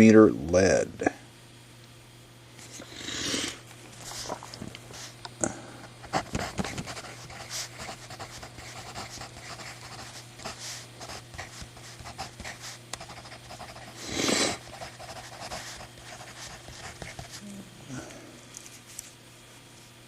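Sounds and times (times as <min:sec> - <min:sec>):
loud sniff: 0:02.8 - 0:03.6, 0:13.8 - 0:14.7.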